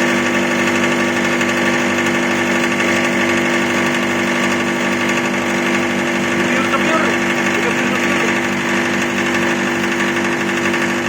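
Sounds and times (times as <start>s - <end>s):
grinding machine humming: 0.0s - 11.0s.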